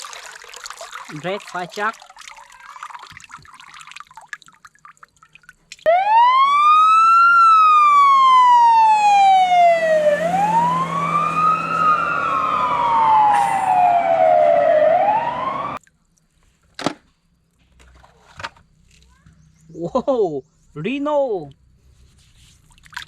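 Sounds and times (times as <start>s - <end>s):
wailing police siren: 5.9s - 15.8s.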